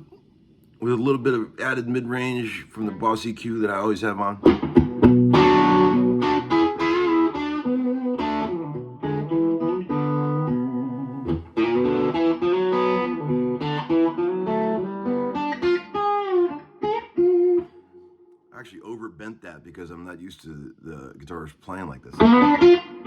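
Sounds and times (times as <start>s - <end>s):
electric guitar single notes: 4.4s - 18.4s, 22.2s - 23.0s.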